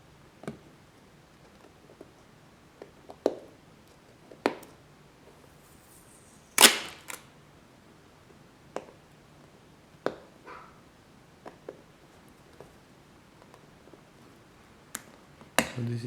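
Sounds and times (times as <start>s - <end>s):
sharp snap: 6.6s - 7.2s.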